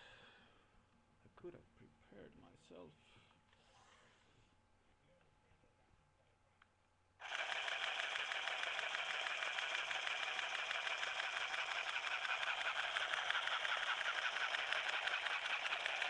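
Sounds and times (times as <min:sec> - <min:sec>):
sewing machine fast clicking: 0:07.2 - 0:16.0.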